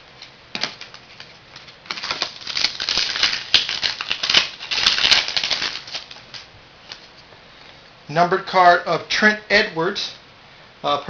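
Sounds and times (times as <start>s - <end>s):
cards being handled: 0.5s - 7.2s
foil wrapper crinkling: 0.5s - 7.2s.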